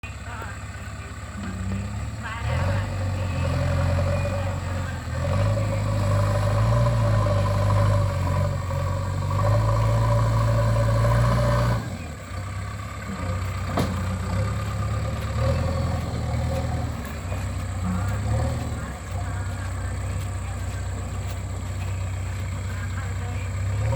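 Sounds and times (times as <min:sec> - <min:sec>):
diesel engine droning: 0:00.0 - 0:23.9.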